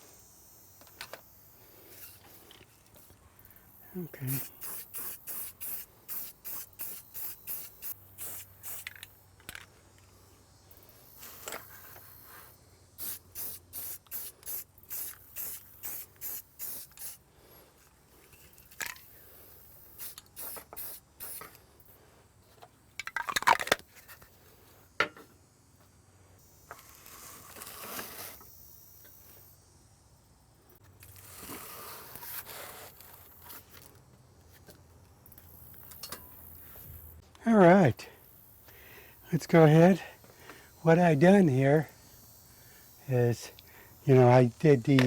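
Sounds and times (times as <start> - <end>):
aerosol can spraying: 4.3 - 9.2, 11.0 - 17.2, 19.8 - 21.6.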